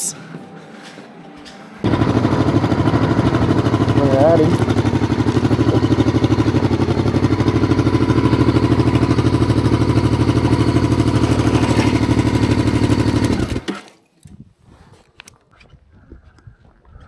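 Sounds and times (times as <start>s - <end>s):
motorcycle engine running: 1.8s - 13.7s.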